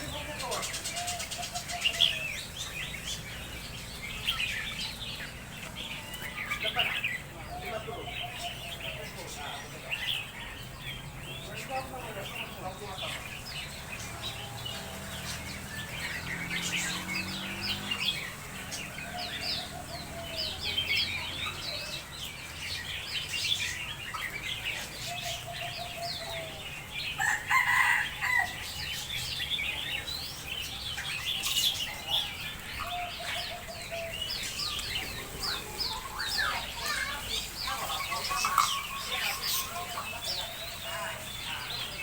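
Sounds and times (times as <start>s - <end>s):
small caged birds chirping: 0.0s - 42.0s
rooster crowing: 27.1s - 28.9s.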